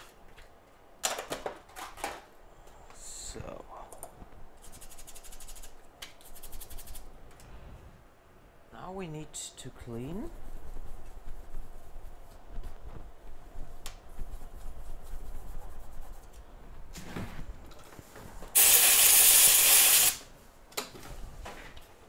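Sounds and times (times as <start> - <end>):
aerosol spray hiss: 18.6 - 20.2.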